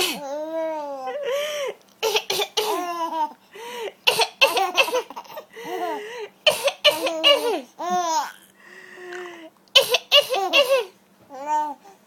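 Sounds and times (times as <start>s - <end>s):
adult coughing: 2.0s - 2.8s, 4.1s - 5.1s, 6.5s - 7.7s, 9.8s - 11.0s
baby laughing: 4.4s - 6.0s, 6.9s - 8.4s.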